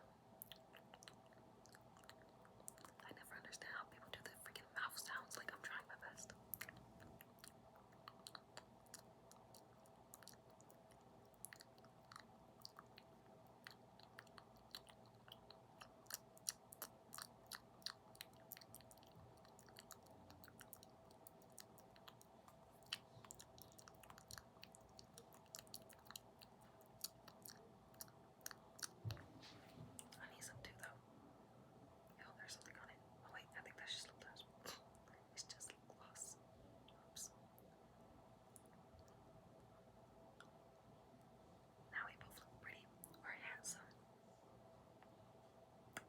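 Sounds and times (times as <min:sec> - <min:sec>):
faint steady hum: 0:00.0 - 0:46.0
wet mouth clicks and smacks: 0:00.4 - 0:03.1, 0:06.2 - 0:29.2.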